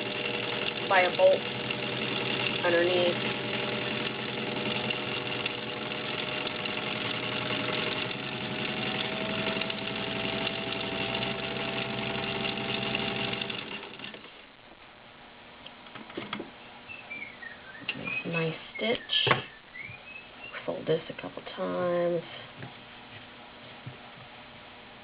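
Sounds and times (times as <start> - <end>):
sewing machine stitching: 0.0 - 14.3.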